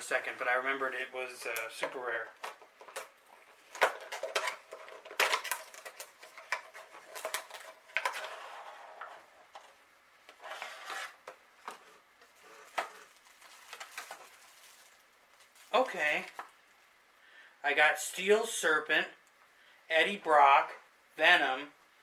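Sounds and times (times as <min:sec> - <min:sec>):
plastic packaging crinkling: 0:02.4 - 0:08.3, 0:11.7 - 0:16.5.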